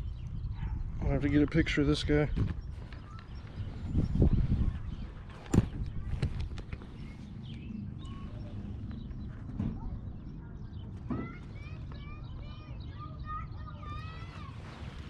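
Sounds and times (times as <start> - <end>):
wind rumble on microphone: 0.0 - 13.0.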